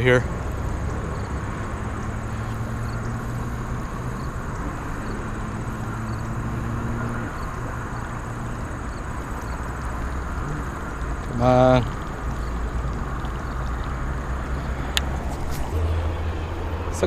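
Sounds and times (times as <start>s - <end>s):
wind rumbling on microphone: 0.0s - 17.0s.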